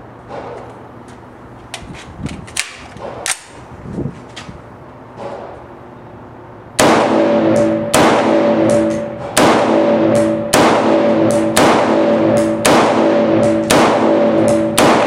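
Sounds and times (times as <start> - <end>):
loud music with heavy hits: 6.8 - 15.0.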